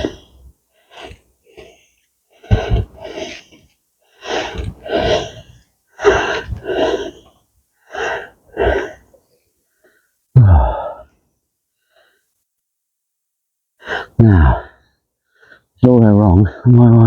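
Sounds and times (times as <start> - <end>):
man breathing hard: 0.0 - 11.1
man sighing: 10.4 - 11.1.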